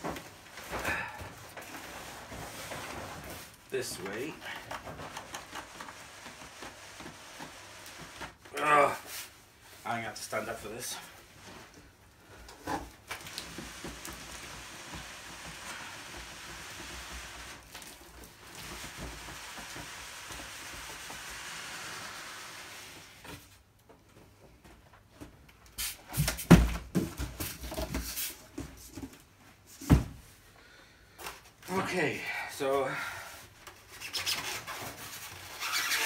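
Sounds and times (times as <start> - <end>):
packaging rustling and scraping: 11.3 - 23.6, 33.5 - 36.0.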